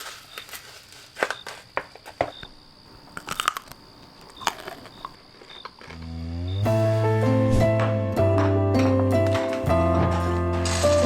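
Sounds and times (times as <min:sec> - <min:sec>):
chocolate bar crunching: 0:03.0 - 0:06.0.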